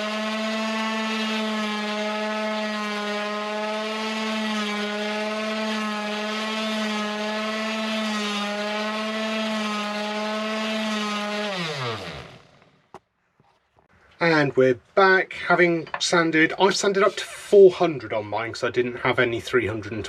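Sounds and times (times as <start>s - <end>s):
motor winding down: 0.0s - 12.8s
orbital sander running: 0.0s - 12.9s.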